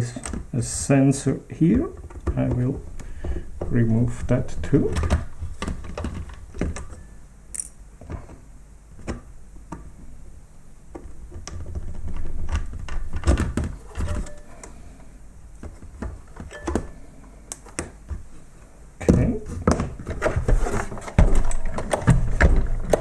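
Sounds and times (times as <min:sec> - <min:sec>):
plastic parts clicking and knocking: 0:00.0 - 0:00.8, 0:01.6 - 0:08.4, 0:09.0 - 0:10.2, 0:10.8 - 0:14.8, 0:15.6 - 0:18.3, 0:19.0 - 0:23.0
plastic parts rattling: 0:00.0 - 0:08.4, 0:10.9 - 0:14.7, 0:19.0 - 0:23.0.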